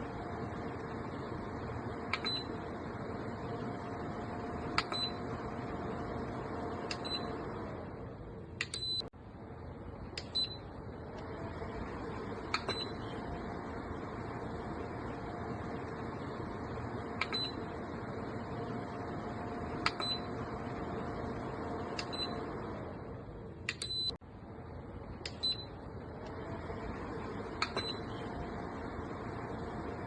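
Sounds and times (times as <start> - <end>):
faint fan motor hum: 0.0 - 30.0
rising fan whine: 0.0 - 30.0
control panel beeps: 2.1 - 2.7, 4.7 - 5.4, 6.9 - 7.4, 8.6 - 9.1, 10.2 - 10.7, 12.5 - 13.2, 17.2 - 17.8, 19.8 - 20.4, 22.0 - 22.5, 23.7 - 24.2, 25.3 - 25.8, 27.6 - 28.3.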